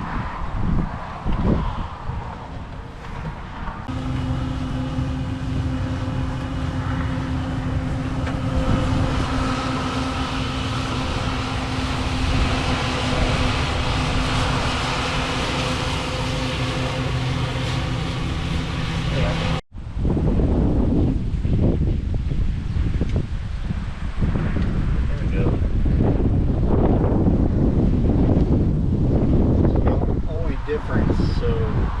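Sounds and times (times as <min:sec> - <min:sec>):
engine running: 0:02.4 - 0:22.6.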